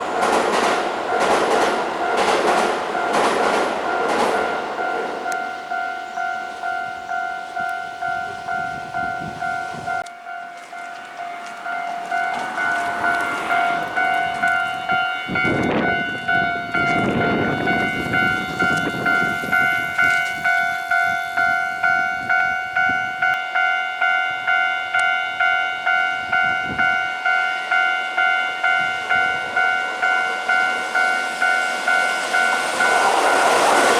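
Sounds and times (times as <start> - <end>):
train wheels clacking over rail joints: 0.0 - 4.9
train rumbling past: 0.0 - 23.8, 24.5 - 33.9
level crossing warning bell: 0.0 - 33.9.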